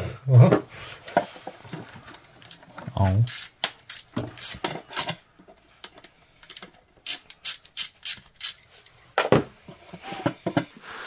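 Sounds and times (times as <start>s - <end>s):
hand tools clicking and scraping: 1.1s - 9.0s.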